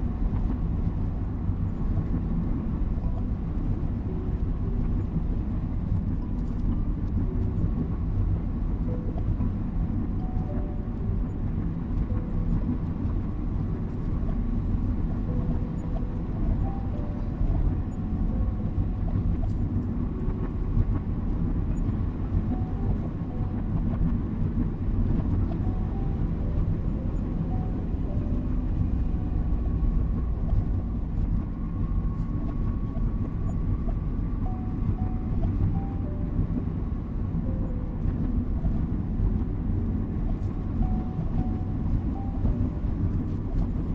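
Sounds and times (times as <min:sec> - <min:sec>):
car engine and road noise: 0:00.0 - 0:43.9
soft melody notes: 0:07.1 - 0:33.2, 0:34.0 - 0:43.9.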